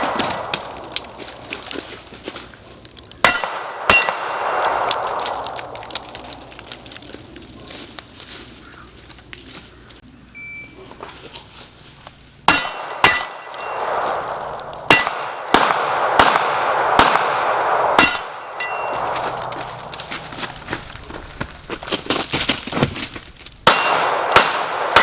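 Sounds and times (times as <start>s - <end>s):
pistol shots: 0.0s - 1.6s, 3.2s - 6.6s, 12.5s - 20.3s, 23.6s - 25.0s
metallic ringing of steel targets: 3.2s - 5.6s, 12.5s - 16.3s, 17.4s - 21.7s, 23.6s - 25.0s.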